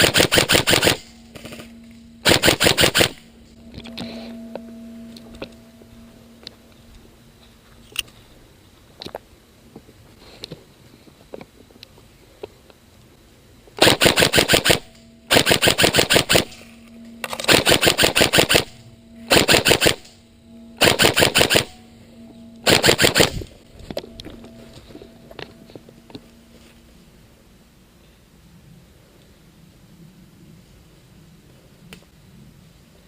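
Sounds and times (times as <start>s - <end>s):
airsoft gun firing bursts: 0.0s - 3.2s, 13.8s - 16.6s, 17.5s - 18.7s, 19.3s - 20.1s, 20.8s - 21.8s, 22.7s - 23.4s.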